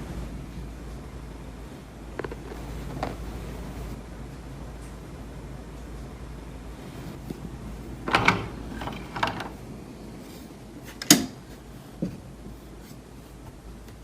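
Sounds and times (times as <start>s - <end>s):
door handle rattling: 8.0s - 9.6s.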